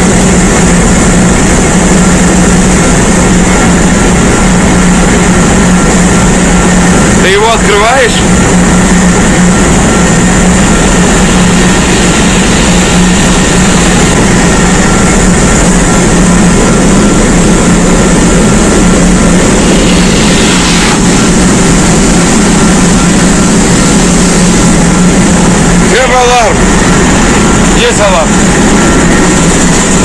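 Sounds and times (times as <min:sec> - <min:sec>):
engine room machinery hum: 0:00.0 - 0:30.0
hiss: 0:19.3 - 0:21.9.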